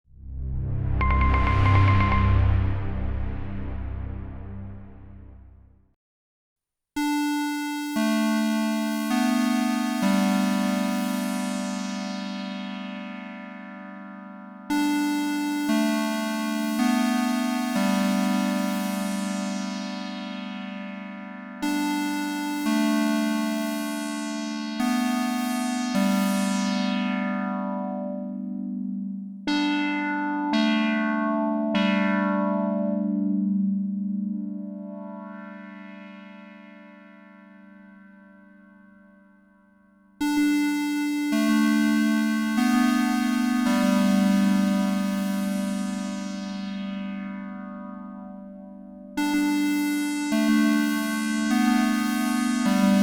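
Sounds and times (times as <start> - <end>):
music: 0.1 - 6.0, 7.0 - 53.0
sustained synthesizer tones: 0.2 - 5.4
synthesizer sustained bright notes: 0.2 - 5.5, 7.1 - 28.6, 34.3 - 38.2, 40.2 - 53.0.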